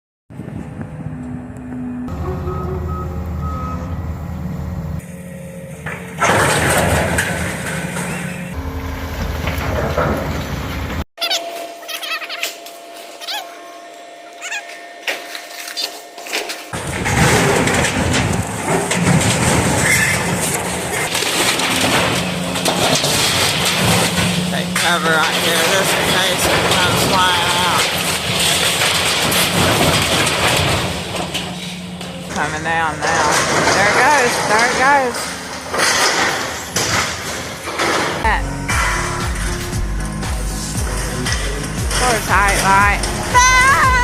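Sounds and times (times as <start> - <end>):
excavator diesel engine running: 0.4 - 11.0, 12.6 - 44.0
backup alarm beeping: 1.8 - 6.2
demolition debris crunching and crashing: 5.1 - 13.4, 14.0 - 44.0.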